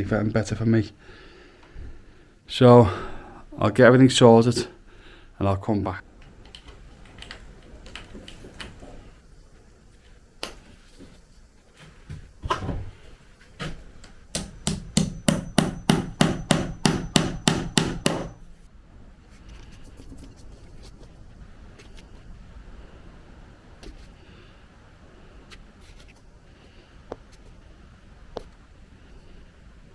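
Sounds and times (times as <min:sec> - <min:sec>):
hammer blows: 0:13.6 - 0:18.5.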